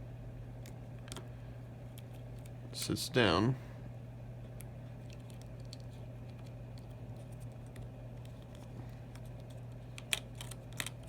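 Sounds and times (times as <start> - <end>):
steady low hum: 0.0 - 11.0
small parts and tools clicking: 7.6 - 11.0.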